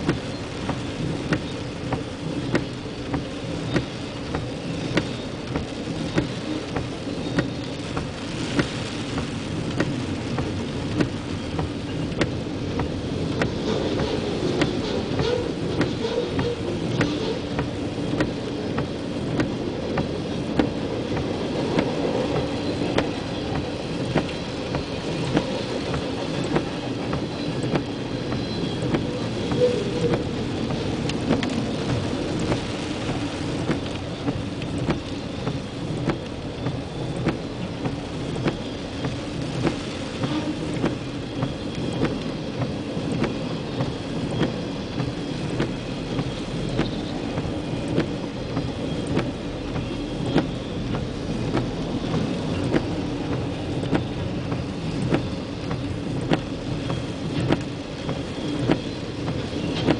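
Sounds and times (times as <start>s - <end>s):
rain falling: 0.0s - 59.9s
freight train rumbling past: 11.4s - 34.7s, 35.8s - 59.9s
train wheels clicking over rail joints: 13.2s - 32.5s.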